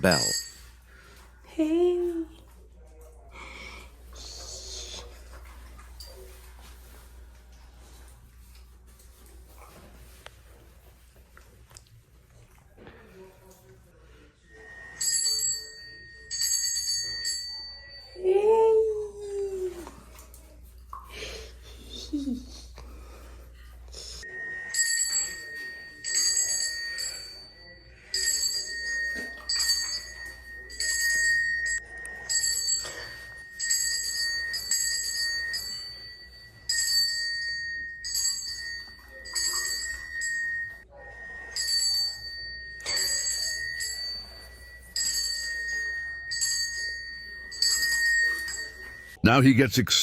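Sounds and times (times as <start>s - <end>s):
small bell ringing: 0.0s - 0.8s, 14.8s - 18.4s, 24.3s - 49.2s.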